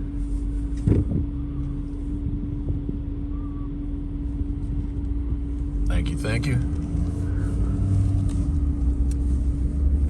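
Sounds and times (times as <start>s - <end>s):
road and engine rumble: 0.0s - 10.0s.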